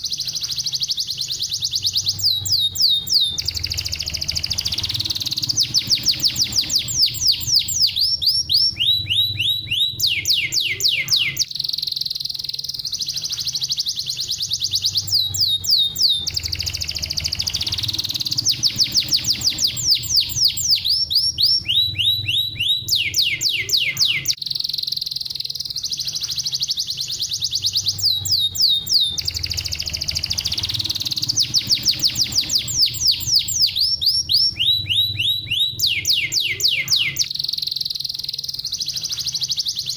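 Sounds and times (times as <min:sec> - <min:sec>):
canary singing trills: 0:00.0 - 0:39.9
faint low hum: 0:00.0 - 0:39.9.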